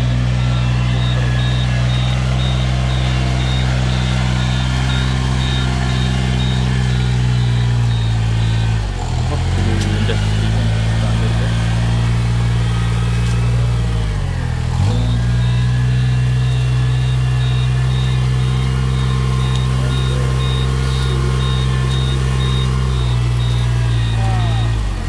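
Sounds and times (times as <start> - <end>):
engine running under load: 0.0 - 25.0.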